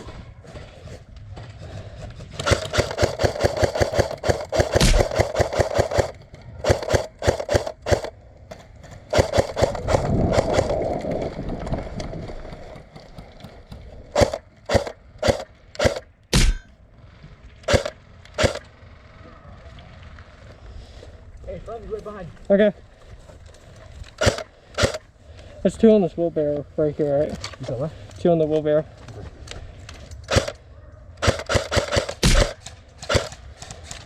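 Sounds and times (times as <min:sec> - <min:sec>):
airsoft gun firing: 0:02.4 - 0:08.2, 0:09.0 - 0:10.8, 0:14.1 - 0:16.8, 0:17.6 - 0:18.8, 0:24.2 - 0:25.0, 0:30.3 - 0:30.6, 0:31.2 - 0:34.0.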